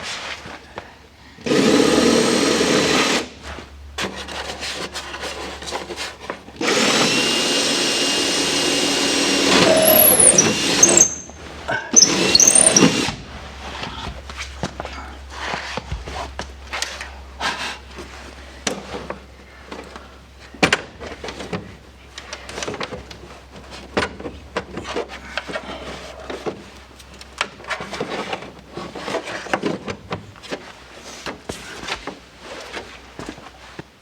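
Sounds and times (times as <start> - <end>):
hardware clicking and scraping: 9.5 - 13.1.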